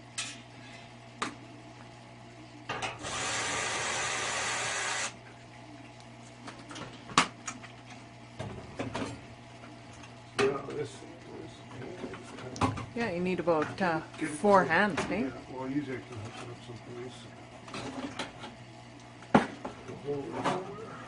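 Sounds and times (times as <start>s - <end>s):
power tool running: 3.0s - 5.2s.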